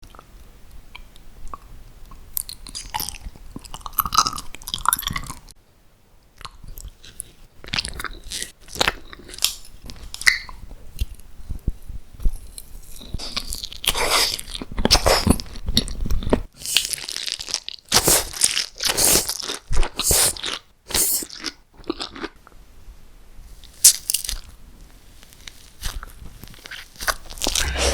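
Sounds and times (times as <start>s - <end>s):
crunching crisp food: 2.4s - 5.5s, 6.4s - 11.2s, 12.3s - 22.4s, 23.6s - 27.9s.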